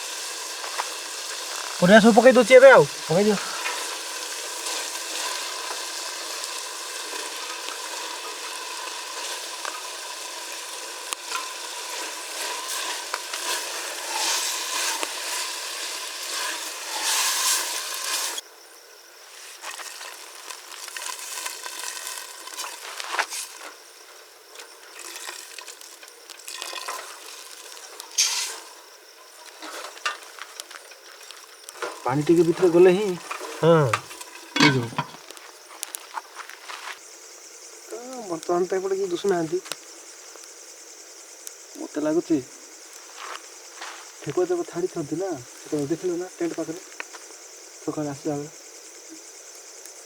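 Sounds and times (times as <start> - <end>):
food sizzling in a pan: 0.0 - 50.0.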